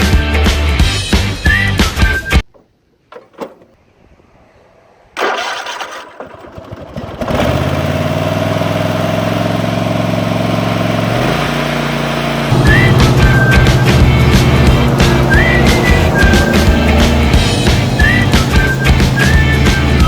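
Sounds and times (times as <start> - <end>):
clicks: 2.4 - 3.8
mower engine starting and running: 2.4 - 3.8, 5.2 - 20.0.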